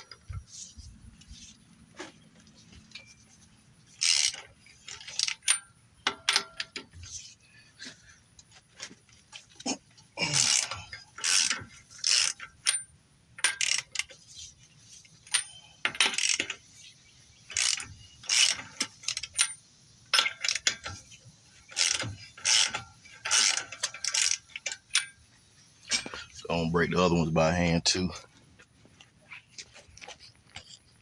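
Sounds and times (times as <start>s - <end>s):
ratchet wrench clicking: 4.0s - 6.8s, 10.4s - 12.8s, 13.4s - 14.1s, 15.3s - 16.6s, 17.5s - 19.6s, 20.2s - 21.0s, 21.7s - 25.1s.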